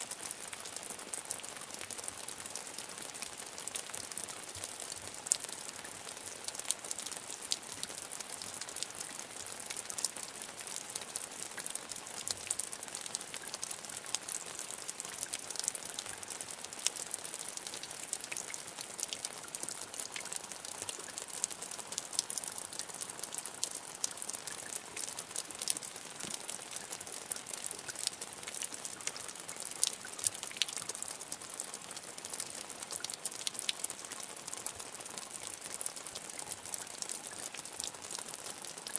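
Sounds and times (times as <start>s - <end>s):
rain pattering on hard surface: 0.0s - 38.9s.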